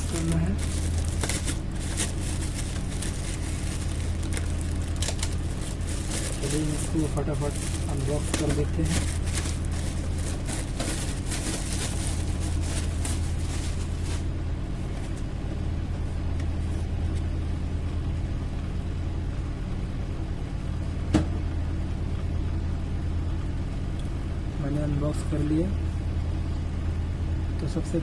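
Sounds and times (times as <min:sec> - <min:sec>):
packaging rustling: 0:00.0 - 0:14.3
low steady hum: 0:00.0 - 0:28.0.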